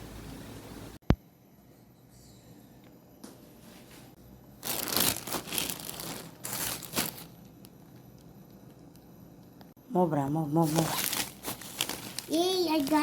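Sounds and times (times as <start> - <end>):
packaging crinkling and tearing: 4.6 - 7.4, 10.6 - 13.0.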